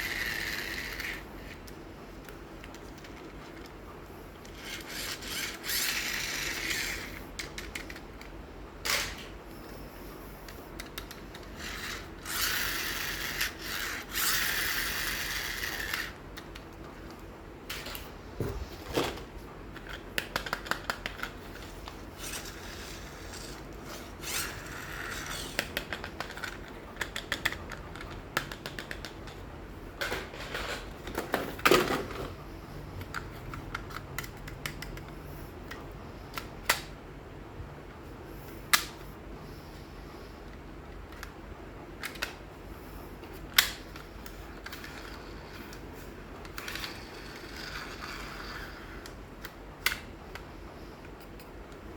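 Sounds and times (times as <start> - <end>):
plastic toys clicking and snapping: 4.5 - 9.3, 19.7 - 21.7, 23.9 - 29.4, 33.0 - 35.1, 42.0 - 42.4, 43.4 - 50.5.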